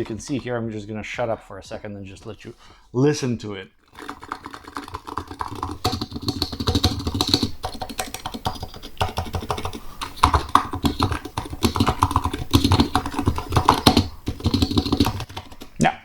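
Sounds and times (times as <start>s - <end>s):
mechanical keyboard typing: 4.0s - 15.8s.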